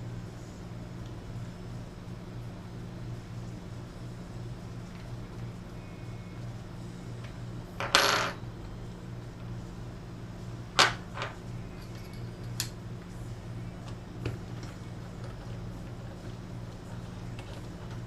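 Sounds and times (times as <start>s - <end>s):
steady low hum: 0.0s - 18.0s
screws and screwdriver clinking: 10.8s - 12.7s.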